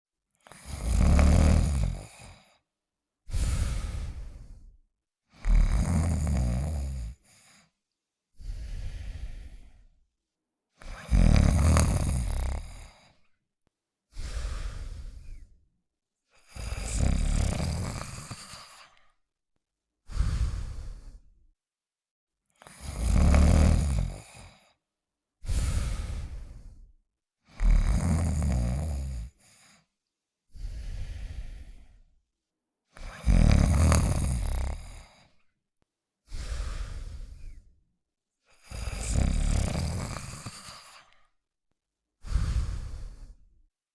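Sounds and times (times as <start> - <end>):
cartoon dog snoring: 0.4 - 2.6, 3.3 - 7.7, 8.4 - 9.9, 10.8 - 13.2, 14.1 - 15.6, 16.4 - 19.2, 20.0 - 21.4, 22.6 - 24.8, 25.4 - 26.9, 27.5 - 29.8, 30.5 - 32.0, 33.0 - 35.4, 36.3 - 37.7, 38.5 - 41.3, 42.2 - 43.5.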